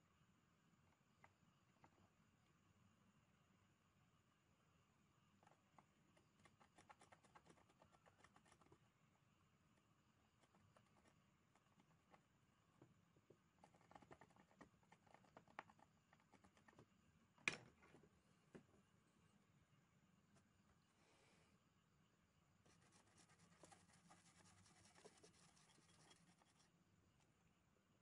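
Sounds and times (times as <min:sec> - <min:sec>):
small hand work scratching and ticking: 0:05.3 - 0:08.8, 0:10.3 - 0:12.3, 0:13.2 - 0:16.9, 0:22.6 - 0:27.3.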